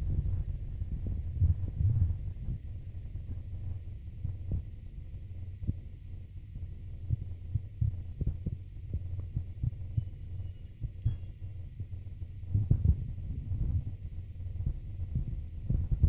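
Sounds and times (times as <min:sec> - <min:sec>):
low muffled thumps: 0:00.0 - 0:02.7, 0:10.8 - 0:16.0
steady low hum: 0:00.0 - 0:16.0.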